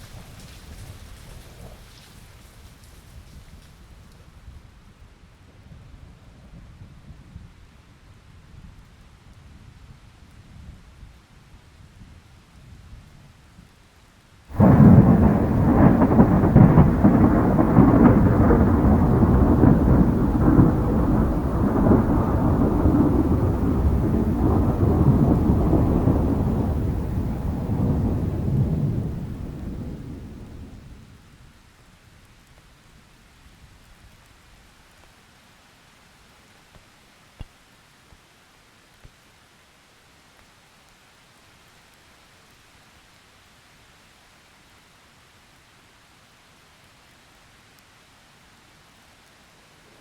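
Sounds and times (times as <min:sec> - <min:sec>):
rain hiss: 0:00.0 - 0:03.8, 0:14.5 - 0:31.3
thunderclap with deep rumble: 0:14.5 - 0:31.2.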